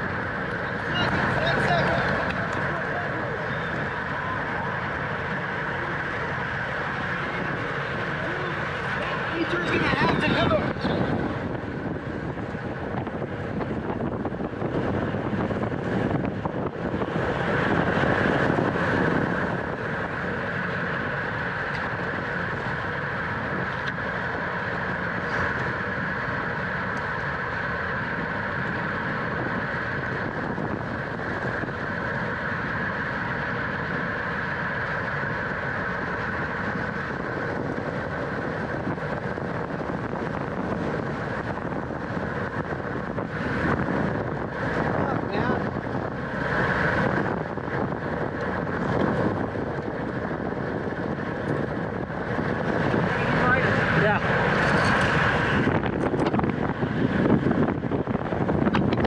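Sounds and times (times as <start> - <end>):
road noise: 0.0 - 59.0
wind rush: 0.0 - 59.0.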